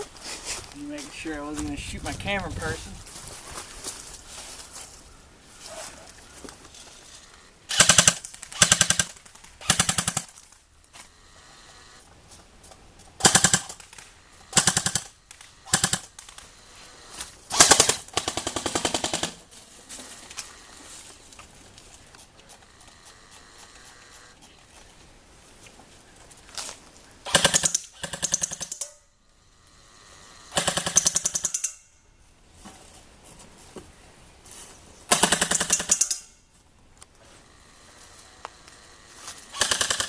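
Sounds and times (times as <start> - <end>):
airsoft rifle full-auto bursts: 7.2 - 10.4, 13.2 - 19.5, 27.2 - 29.0, 29.7 - 31.9, 35.1 - 36.2, 37.5 - 40.0.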